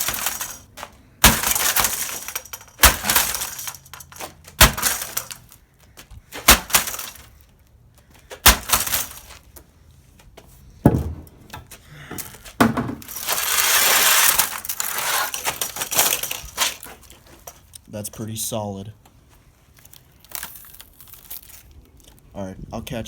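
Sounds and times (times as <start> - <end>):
glass and plastic crunching: 0.0 - 9.7, 10.8 - 17.8, 19.7 - 22.2
heavy tool striking monitor: 1.2 - 5.4, 6.4 - 7.2, 8.3 - 9.3, 10.9 - 11.7.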